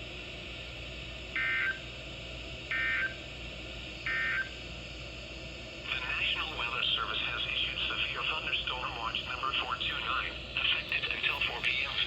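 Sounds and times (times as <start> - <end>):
low hiss and hum: 0.0 - 12.0
warbling modem-like data tones: 4.1 - 4.5, 5.9 - 12.0.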